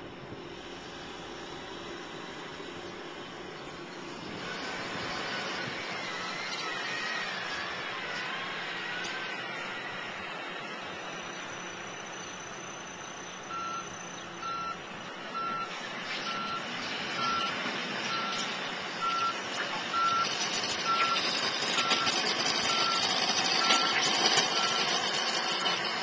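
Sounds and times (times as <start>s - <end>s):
engine and machinery noise: 0.0s - 26.0s
backup alarm beeping: 13.4s - 15.7s.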